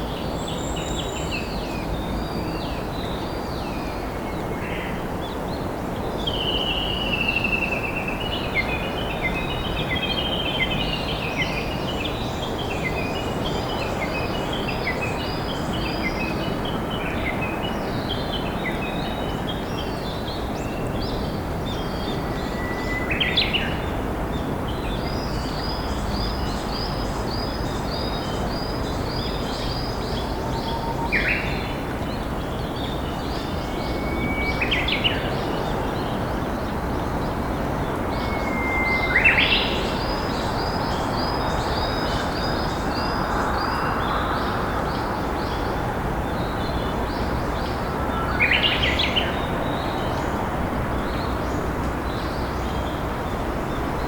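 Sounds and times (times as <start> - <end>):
bush warbler singing: 0.0 - 54.0.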